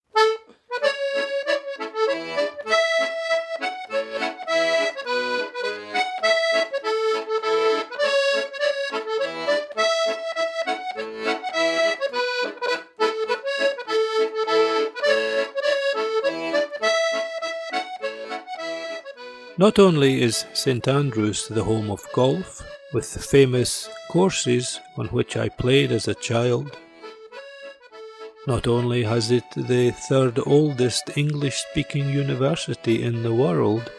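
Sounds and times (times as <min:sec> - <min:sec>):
lively accordion melody: 0:00.0 - 0:33.9.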